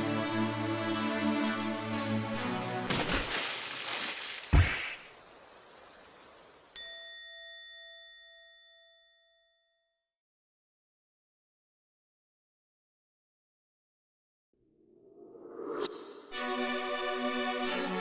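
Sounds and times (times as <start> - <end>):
rushing hiss: 2.9 - 6.1
heavy thud: 4.5 - 5.1.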